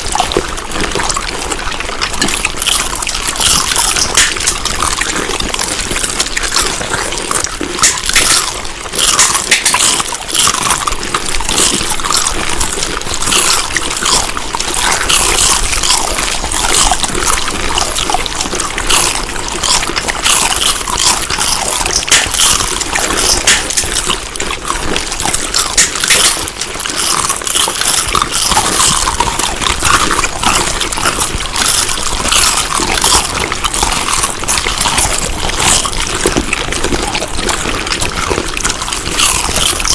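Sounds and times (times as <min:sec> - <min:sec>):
food being chewed: 0:00.0 - 0:39.9.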